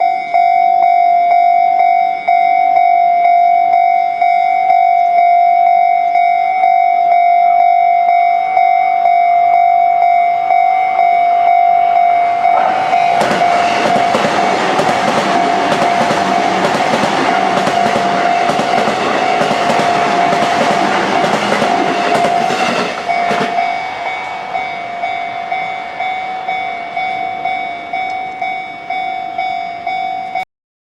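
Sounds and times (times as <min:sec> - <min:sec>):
level-crossing bell dinging: 0:00.0 - 0:30.4
train rushing past: 0:10.5 - 0:30.2
wheels clacking over rail joints: 0:12.6 - 0:24.7.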